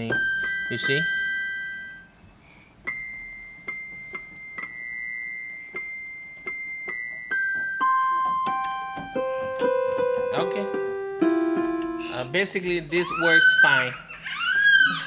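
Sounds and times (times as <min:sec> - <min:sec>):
electronic keyboard notes: 0:00.0 - 0:02.2, 0:02.8 - 0:13.5.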